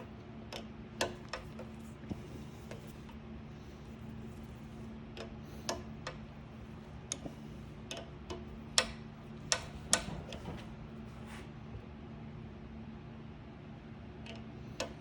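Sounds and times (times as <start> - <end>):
steady low hum: 0.0 - 15.0
metal clicks and taps: 7.9 - 10.4.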